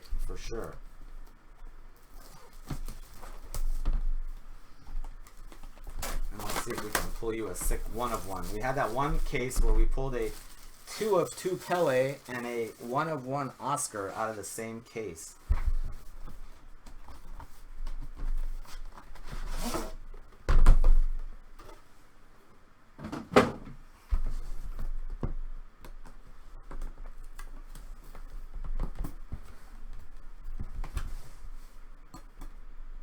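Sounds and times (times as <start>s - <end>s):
packaging rustle: 2.0s - 14.5s.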